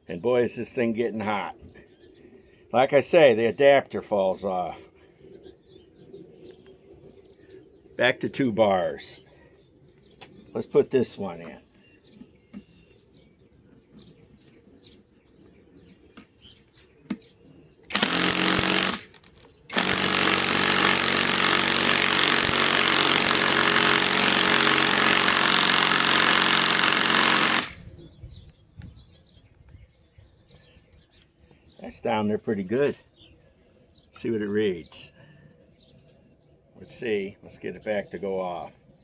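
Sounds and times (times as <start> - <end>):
cordless impact wrench hammering: 17.9 - 27.8.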